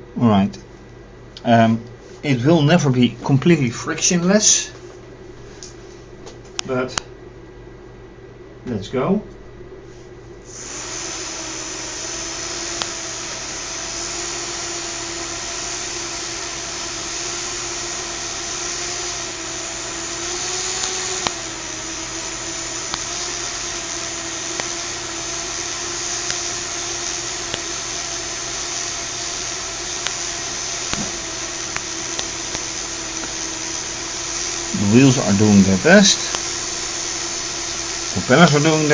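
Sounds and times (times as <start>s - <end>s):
small electric motors whining: 10.5s - 38.9s.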